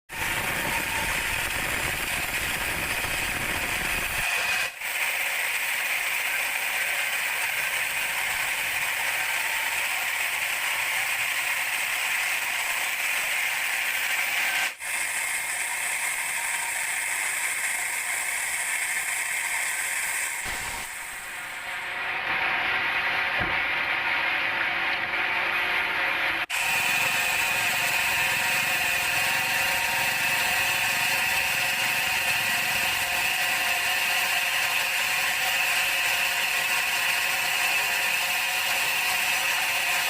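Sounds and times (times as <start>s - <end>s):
band saw blade cutting log: 0.1s - 40.0s.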